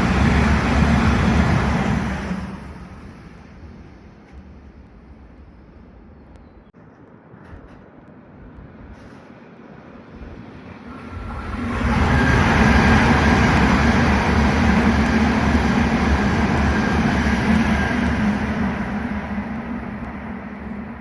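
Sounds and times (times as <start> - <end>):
train passing rumble: 0.0 - 21.0.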